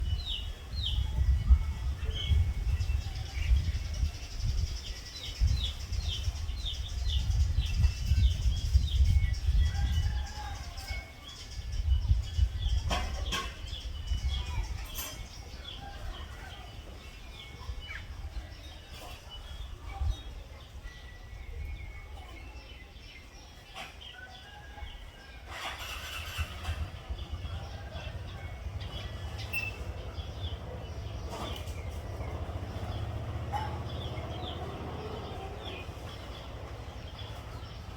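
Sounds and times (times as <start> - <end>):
small birds chirping: 0.0 - 37.9
low outdoor rumble: 25.5 - 37.9.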